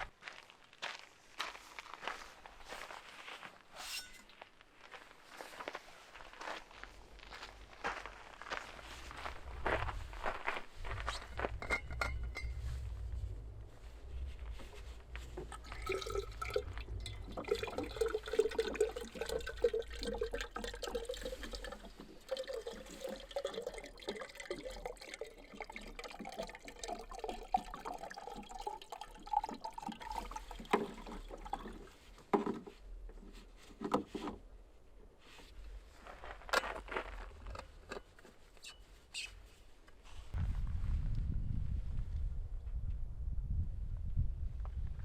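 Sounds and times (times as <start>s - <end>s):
water pouring into a container: 15.3s - 32.2s.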